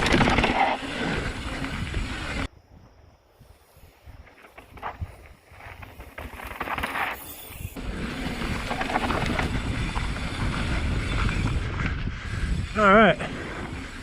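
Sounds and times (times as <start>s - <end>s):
bike tyres rattling over dirt: 0.0s - 2.6s, 3.4s - 14.0s
wind buffeting microphone: 7.6s - 14.0s.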